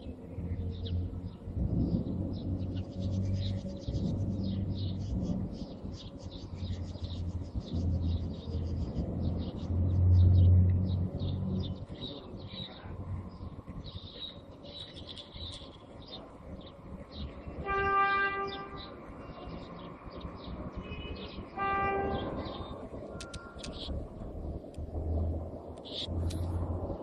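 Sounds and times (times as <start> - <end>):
birds chirping: 0.0 - 27.0
low rumbling boom: 0.5 - 14.0, 22.2 - 27.0
horn sounding: 17.6 - 18.8, 20.8 - 22.4.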